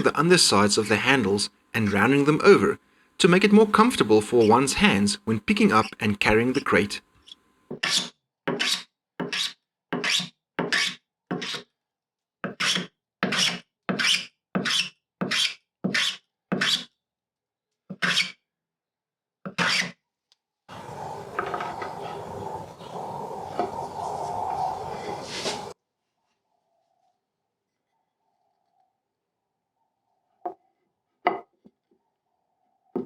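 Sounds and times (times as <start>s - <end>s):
hand tool scraping wood: 20.7s - 25.8s.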